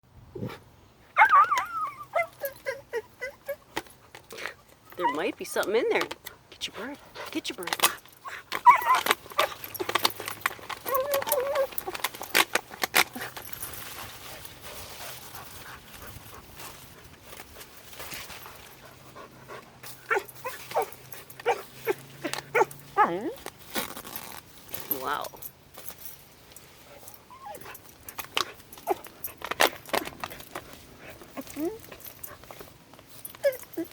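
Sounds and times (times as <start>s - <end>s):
fox yipping: 1.2s - 3.7s, 8.2s - 9.8s, 10.8s - 12.0s, 20.0s - 23.2s, 27.3s - 27.8s
fox whining: 1.2s - 3.8s, 8.2s - 10.1s, 10.7s - 12.5s, 20.0s - 23.2s, 27.3s - 27.8s, 31.0s - 32.1s, 33.3s - 33.9s.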